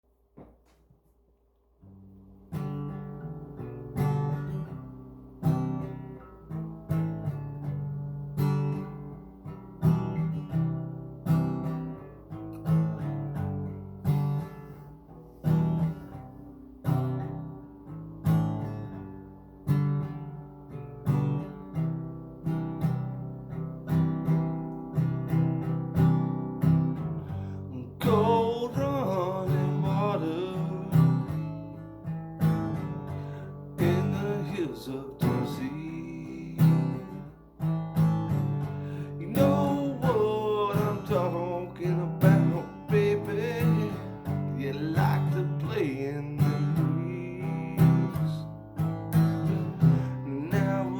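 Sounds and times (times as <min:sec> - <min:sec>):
acoustic guitar strumming: 0:01.8 - 0:50.9
person singing: 0:27.4 - 0:31.5, 0:33.8 - 0:37.3, 0:38.9 - 0:48.5, 0:49.8 - 0:50.9.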